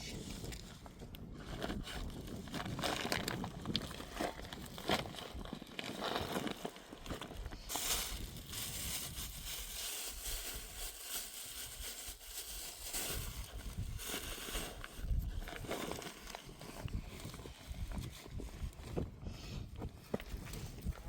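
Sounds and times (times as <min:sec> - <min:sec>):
footsteps on stony ground: 0:00.2 - 0:09.2, 0:13.2 - 0:21.0
wind hiss: 0:07.5 - 0:15.6.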